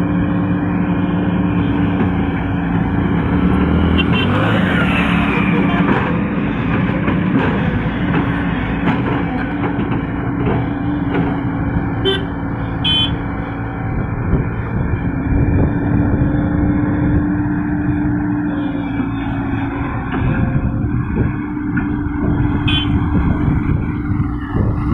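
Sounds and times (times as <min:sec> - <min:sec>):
heavy diesel engine under load: 0:00.0 - 0:24.9
high-pitched horn toots: 0:12.0 - 0:13.2, 0:22.6 - 0:23.0.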